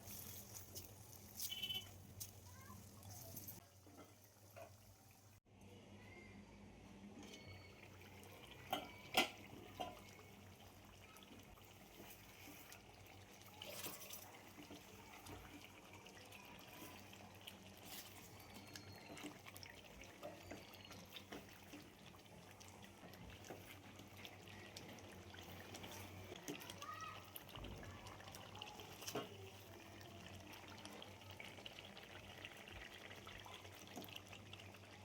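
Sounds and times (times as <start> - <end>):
water trickling and dripping: 7.2 - 35.0.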